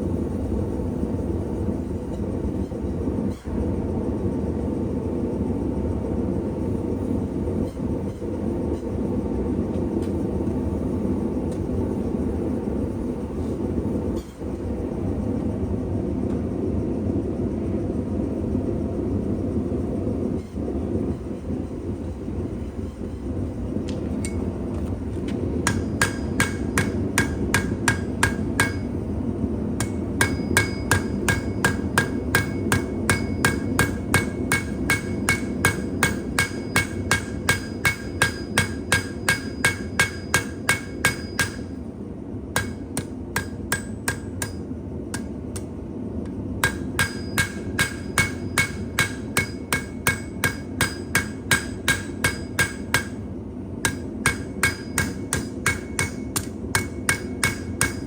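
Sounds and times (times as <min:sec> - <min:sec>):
hammer ringing on anvil: 0:25.6 - 0:29.0, 0:29.8 - 0:41.8, 0:42.6 - 0:45.7, 0:46.6 - 0:58.0.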